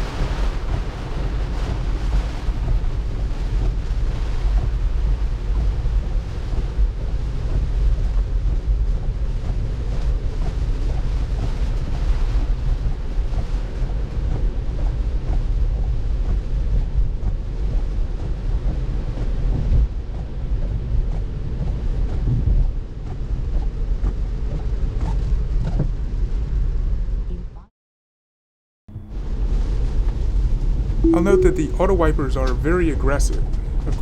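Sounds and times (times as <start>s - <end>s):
heavy rain on car: 0.0s - 19.4s.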